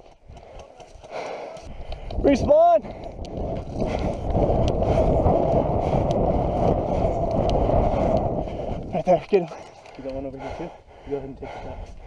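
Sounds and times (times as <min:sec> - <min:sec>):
faint clicks: 0:00.0 - 0:02.2, 0:06.9 - 0:08.3
wind rumbling on microphone: 0:01.2 - 0:12.0.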